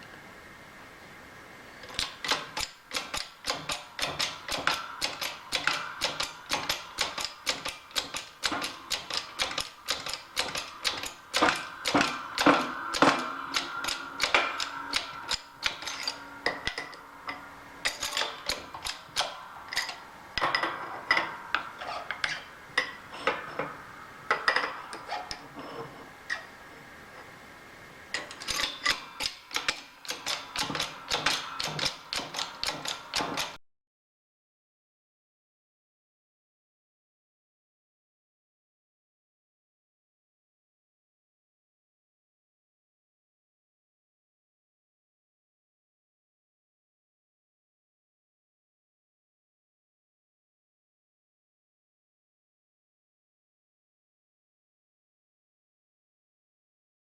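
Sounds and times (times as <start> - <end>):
rapid metallic clicking and tapping: 2.0 - 16.2, 28.5 - 33.6.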